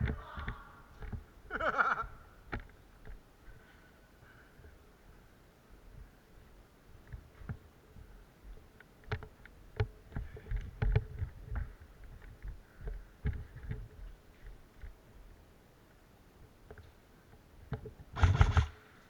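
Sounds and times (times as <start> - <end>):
knocks and thumps: 18.2 - 18.8.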